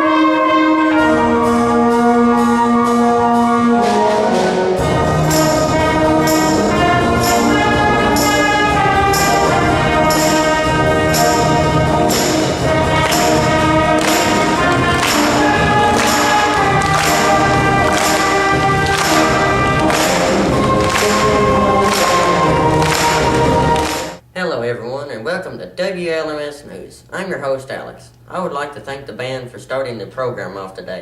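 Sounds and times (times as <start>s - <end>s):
school brass band playing: 0.0s - 24.2s
percussion beat: 2.4s - 24.2s.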